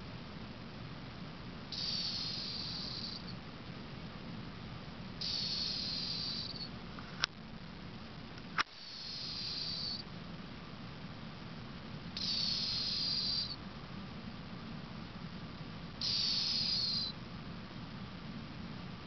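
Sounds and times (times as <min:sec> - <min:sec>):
cat snoring whistles: 0:01.7 - 0:03.3, 0:05.2 - 0:06.7, 0:08.7 - 0:10.0, 0:12.2 - 0:13.6, 0:16.0 - 0:17.2.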